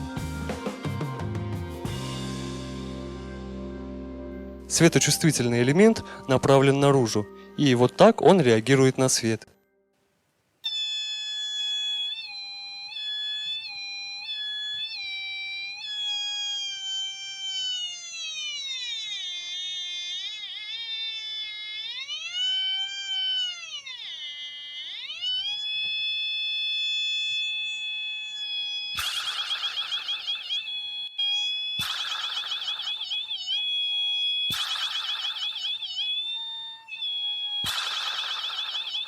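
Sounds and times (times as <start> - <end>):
electronic tone warbling: 26.9 - 39.0.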